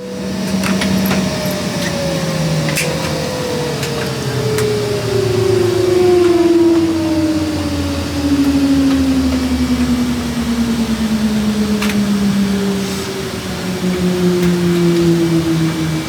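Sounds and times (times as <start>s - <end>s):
jet engine winding down: 0.0s - 16.0s.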